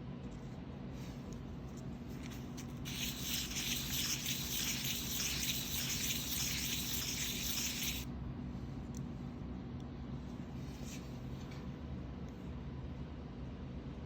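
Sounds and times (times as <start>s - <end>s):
metal rasping on sandpaper: 2.9s - 8.0s.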